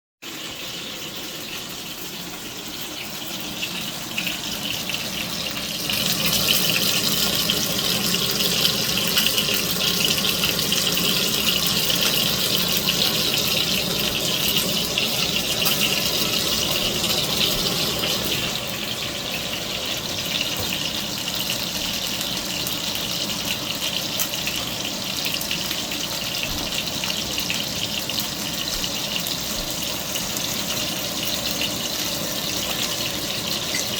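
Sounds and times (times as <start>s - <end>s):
chicken sizzling in hot oil: 0.2s - 33.9s.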